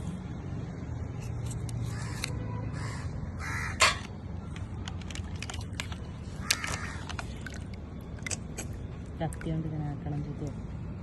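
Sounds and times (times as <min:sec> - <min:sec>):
mussel shells clacking: 0:03.8 - 0:08.9.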